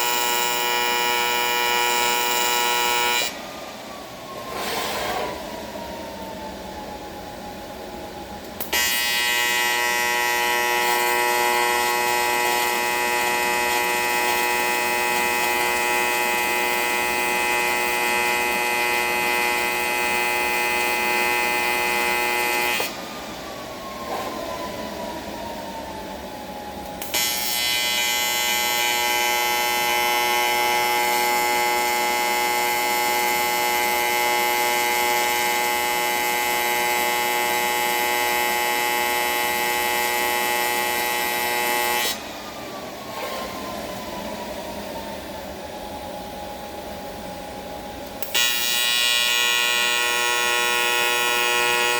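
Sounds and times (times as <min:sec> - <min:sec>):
welding arc buzz: 0:00.0 - 0:03.3, 0:08.6 - 0:23.0, 0:27.0 - 0:42.2, 0:48.1 - 0:51.9.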